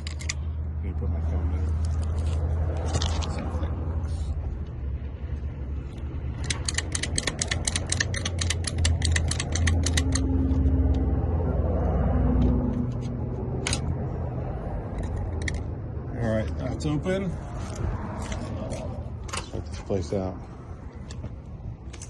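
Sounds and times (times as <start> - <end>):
lock picking metallic clicks: 6.3 - 10.3.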